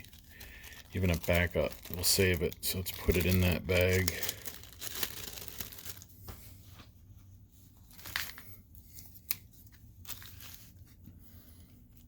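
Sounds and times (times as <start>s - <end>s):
bag rustling and crinkling: 0.0s - 6.2s, 7.9s - 8.6s, 10.0s - 11.0s.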